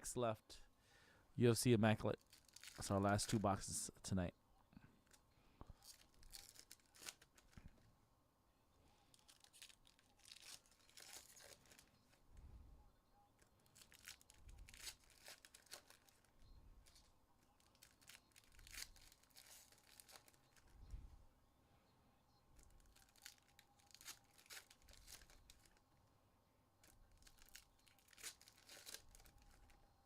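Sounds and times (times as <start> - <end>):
wrappers ripping and crinkling: 2.2 - 3.4, 5.8 - 7.7, 9.1 - 12.1, 13.4 - 20.7, 22.6 - 25.8, 26.8 - 29.8.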